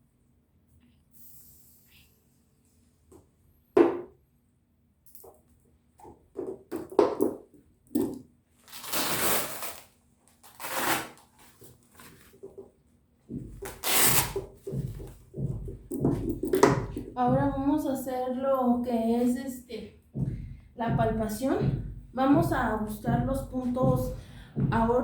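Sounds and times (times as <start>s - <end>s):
rough rustling or ripping: 8.6s - 12.3s
clicks and taps: 14.6s - 17.6s.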